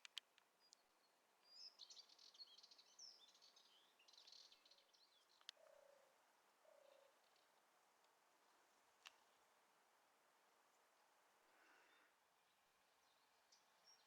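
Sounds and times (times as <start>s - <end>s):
small birds chirping: 0.0s - 7.7s, 10.8s - 14.0s.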